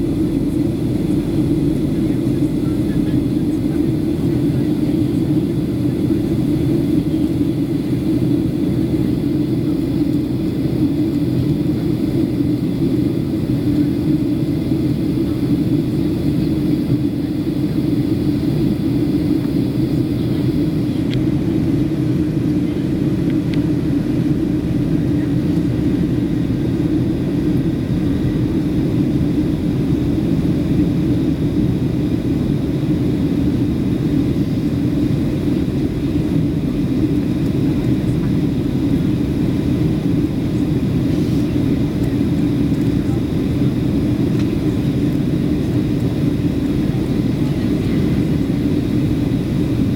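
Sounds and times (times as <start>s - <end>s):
airplane cabin jet engine rumble: 0.0s - 49.9s.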